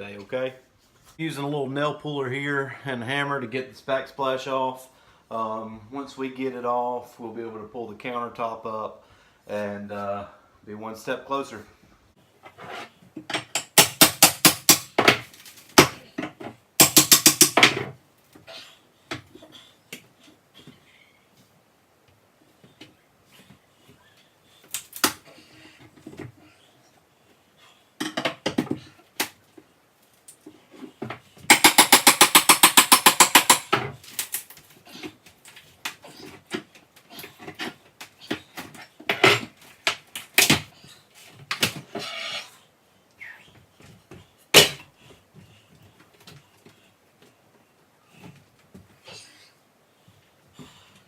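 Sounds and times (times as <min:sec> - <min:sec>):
rapid hammer taps: 0:31.5 - 0:33.7.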